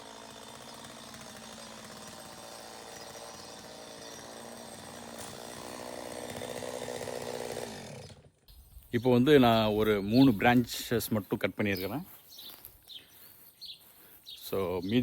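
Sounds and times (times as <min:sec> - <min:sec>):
chainsaw cutting branches: 0:00.0 - 0:08.6.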